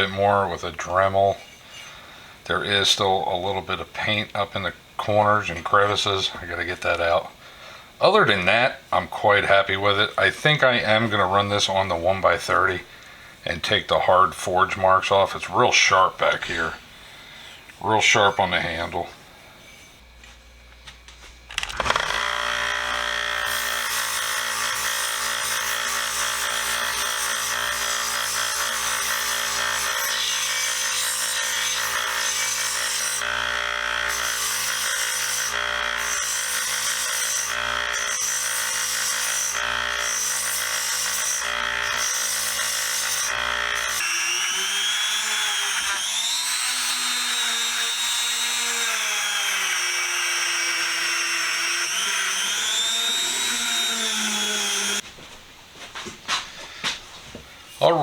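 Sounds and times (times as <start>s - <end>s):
belt sander running: 19.8s - 29.5s, 33.2s - 34.5s, 43.3s - 55.0s
high-pitched power tool: 21.5s - 55.0s
metal grinding on sanding belt: 21.5s - 55.0s.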